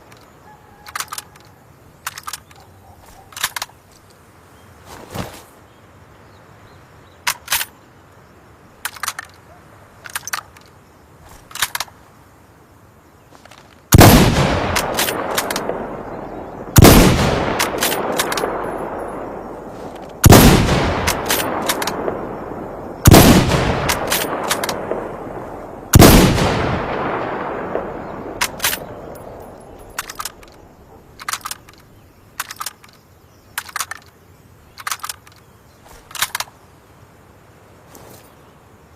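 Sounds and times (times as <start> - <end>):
rifle shots echoing: 13.9 - 31.6
light clicks: 28.3 - 36.6.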